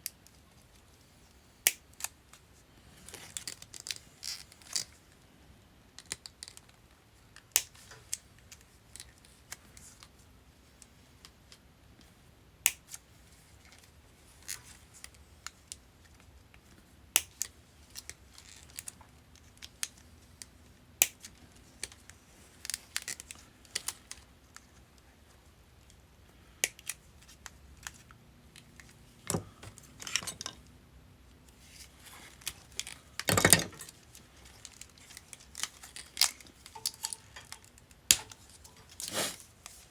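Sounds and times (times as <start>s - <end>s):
hard plastic snipping and cracking: 34.6s - 39.3s.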